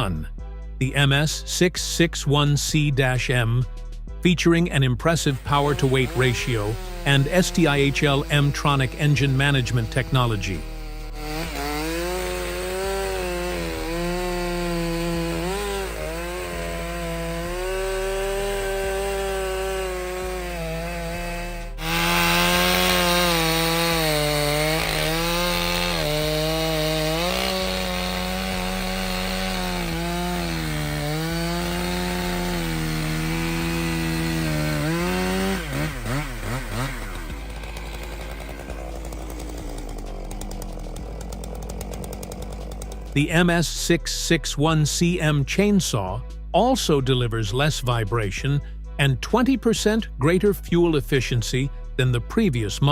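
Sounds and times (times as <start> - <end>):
chainsaw cutting wood: 5.2 - 44.0.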